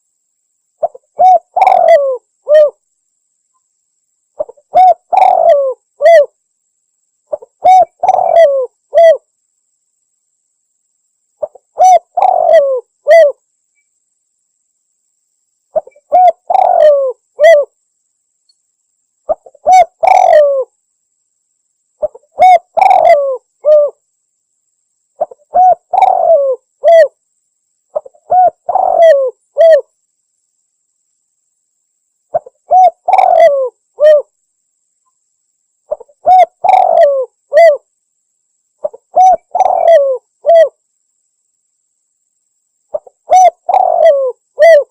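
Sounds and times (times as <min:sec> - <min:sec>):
dove cooing: 0:00.8 - 0:02.8, 0:04.4 - 0:06.4, 0:07.3 - 0:09.3, 0:11.4 - 0:13.4, 0:15.8 - 0:17.7, 0:19.3 - 0:20.7, 0:22.0 - 0:24.0, 0:25.2 - 0:27.2, 0:27.9 - 0:29.9, 0:32.3 - 0:34.3, 0:35.9 - 0:37.9, 0:38.8 - 0:40.8, 0:42.9 - 0:44.9.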